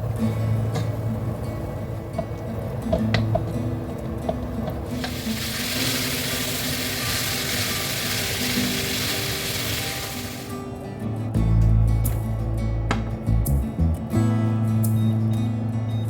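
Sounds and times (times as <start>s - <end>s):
soft background music: 0.0s - 16.0s
food sizzling in a pan: 4.9s - 10.5s.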